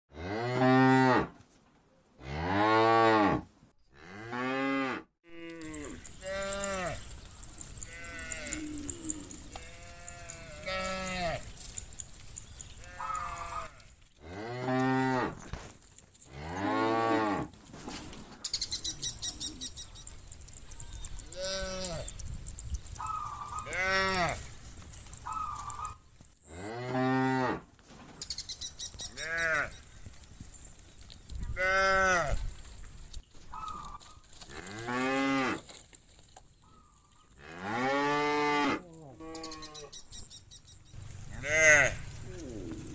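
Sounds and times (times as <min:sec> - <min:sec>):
cattle mooing: 0:07.8 - 0:11.6, 0:12.8 - 0:15.3, 0:41.3 - 0:42.9.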